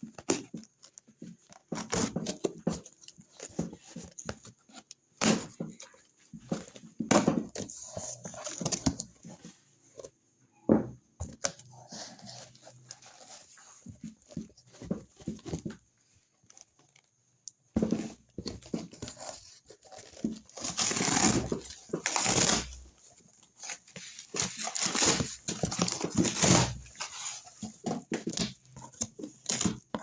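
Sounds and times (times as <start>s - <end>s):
packaging tearing and crinkling: 19.8s - 22.8s.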